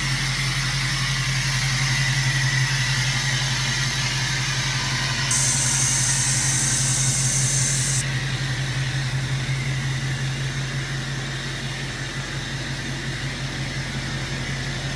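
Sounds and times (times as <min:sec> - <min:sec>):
high hiss: 0:05.3 - 0:08.0.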